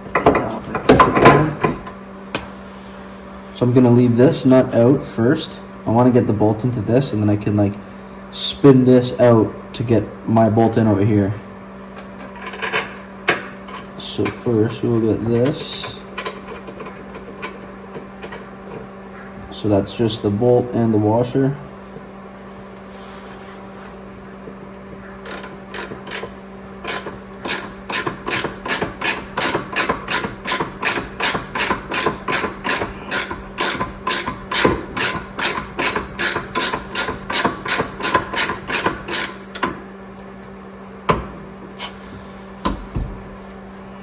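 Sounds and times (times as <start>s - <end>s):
ratchet wrench clicking: 25.2s - 39.8s.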